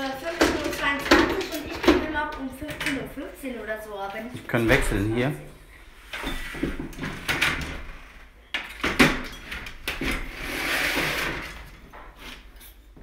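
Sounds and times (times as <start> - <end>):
knocks and clatters: 0.0 - 3.2, 6.2 - 13.0.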